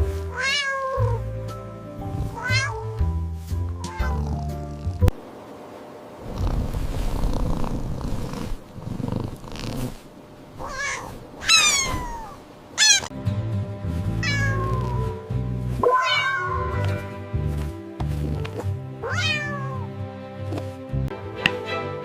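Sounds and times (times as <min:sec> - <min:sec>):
background music: 0:00.0 - 0:05.1, 0:13.1 - 0:22.0
cat meowing: 0:00.3 - 0:01.2, 0:02.2 - 0:03.0, 0:03.8 - 0:04.4, 0:10.6 - 0:13.1, 0:14.2 - 0:15.2, 0:15.8 - 0:17.0, 0:19.0 - 0:19.9.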